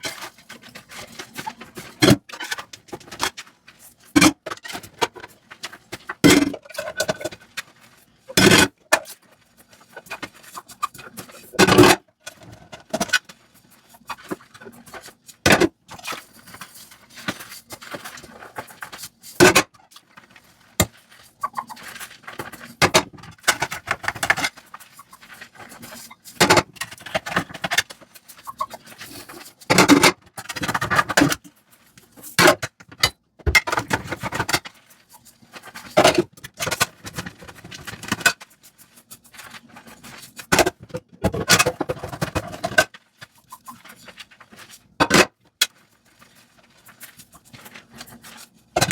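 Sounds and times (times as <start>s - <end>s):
scraping and scrubbing dishes: 0.0s - 31.6s, 32.2s - 48.9s.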